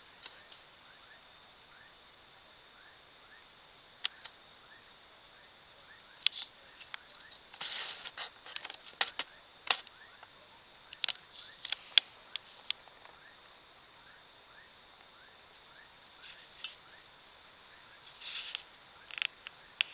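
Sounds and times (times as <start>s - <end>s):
crickets and insects chirping: 0.0s - 19.9s
sharp clicks and crackles: 6.2s - 10.3s, 10.9s - 13.2s, 18.1s - 19.9s.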